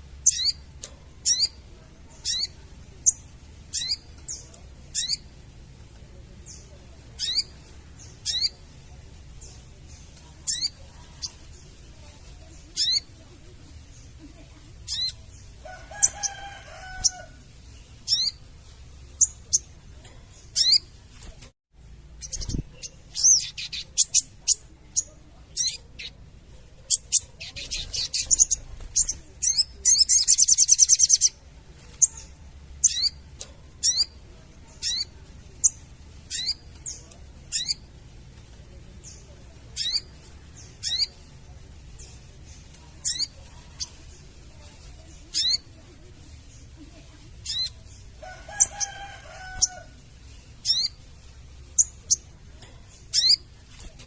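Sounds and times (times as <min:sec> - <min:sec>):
bird chattering call: 0:01.2 - 0:01.6, 0:07.2 - 0:08.6.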